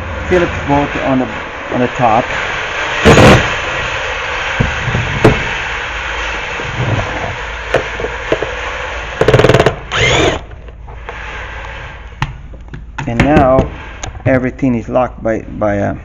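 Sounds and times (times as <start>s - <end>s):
steady background hiss: 0.0s - 16.0s
rapid rattling burst: 0.3s - 10.5s.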